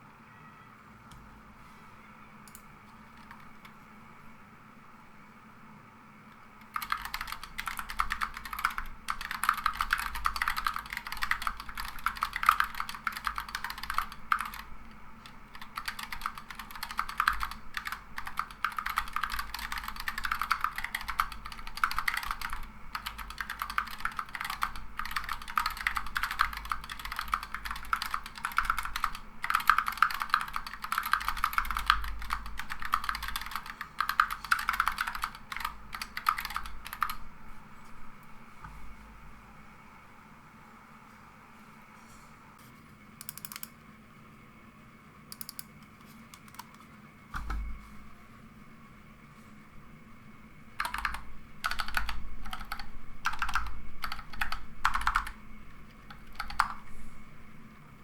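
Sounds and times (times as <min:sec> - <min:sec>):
mechanical keyboard key clacks: 0:45.3 - 0:45.7.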